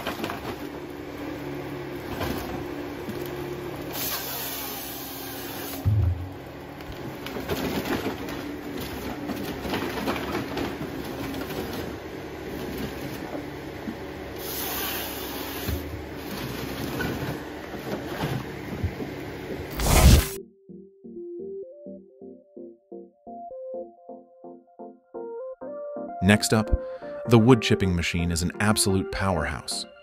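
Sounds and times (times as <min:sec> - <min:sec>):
machinery engine hum: 0:00.0 - 0:20.4.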